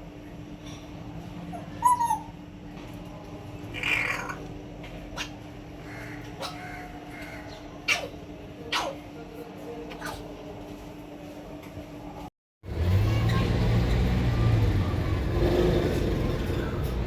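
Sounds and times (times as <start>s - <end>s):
parrot squawk: 1.5s - 2.4s, 3.8s - 4.5s, 5.2s - 9.0s.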